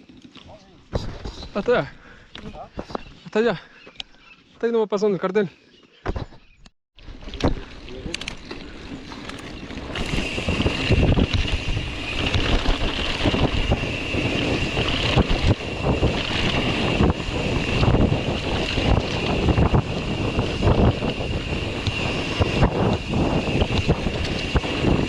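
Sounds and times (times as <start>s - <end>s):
bike rattling on rough ground: 7.0s - 25.0s
wind buffeting microphone: 7.1s - 25.0s.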